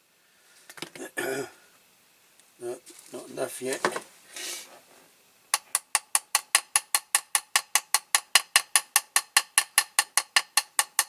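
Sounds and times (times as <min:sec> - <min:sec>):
small hammer tapping metal axle: 0:05.6 - 0:11.0.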